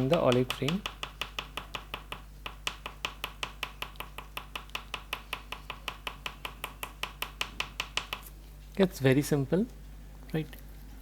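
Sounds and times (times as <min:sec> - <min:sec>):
oil pastel tapping on paper: 0:00.0 - 0:08.3.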